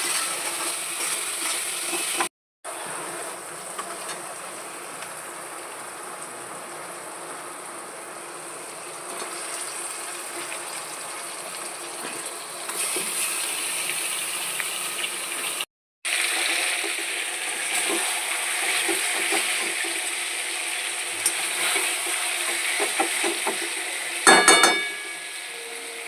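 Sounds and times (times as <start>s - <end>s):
curry sizzling in a pan: 0.0s - 26.0s
ringing metal clatter: 24.3s - 25.4s.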